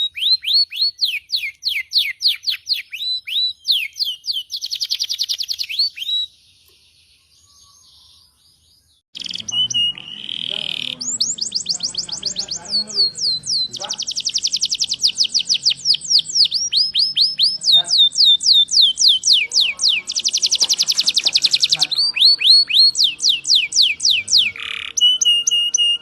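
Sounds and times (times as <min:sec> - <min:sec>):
canary singing: 0:00.0 - 0:26.0
canary fast buzzing trill: 0:09.2 - 0:25.4.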